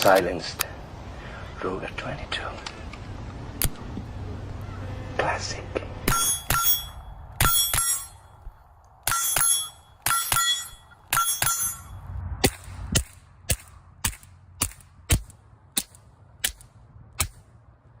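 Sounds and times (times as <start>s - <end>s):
ringing metallic ping: 6.1s - 8.4s, 9.1s - 12.0s.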